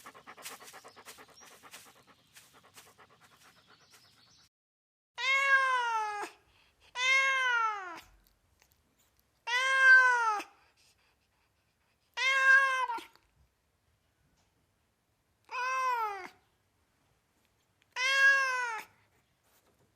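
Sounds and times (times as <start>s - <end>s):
cat meowing: 9.5s - 10.5s, 12.2s - 13.2s, 15.5s - 16.3s, 17.9s - 18.9s.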